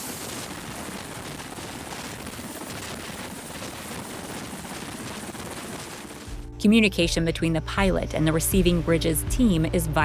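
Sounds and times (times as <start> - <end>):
helicopter rotor and turbine: 0.0 - 6.4.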